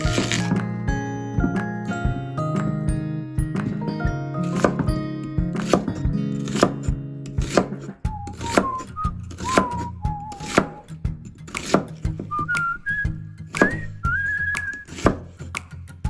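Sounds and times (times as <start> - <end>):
knife chopping on cutting board: 0.0 - 0.7, 4.4 - 10.9, 11.5 - 12.5, 13.5 - 15.6
background music: 0.0 - 16.0
whistled melody: 8.0 - 11.0, 12.2 - 15.1.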